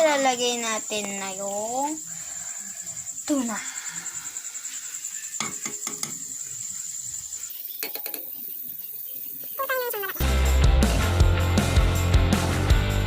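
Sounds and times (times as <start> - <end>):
loud background music: 10.2 - 13.0.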